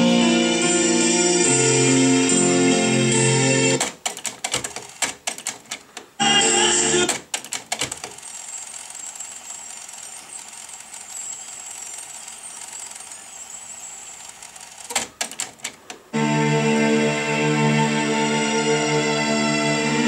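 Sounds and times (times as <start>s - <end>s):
music from tape: 0.0s - 4.0s, 6.1s - 7.3s, 16.1s - 20.0s
cassette deck mechanical clicks: 3.8s - 6.1s, 7.0s - 8.2s, 14.9s - 16.1s.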